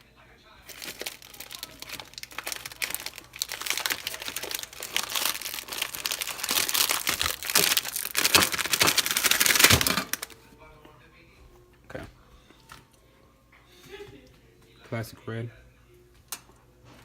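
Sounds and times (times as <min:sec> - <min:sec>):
plastic wrapper crinkling: 0:00.6 - 0:10.4.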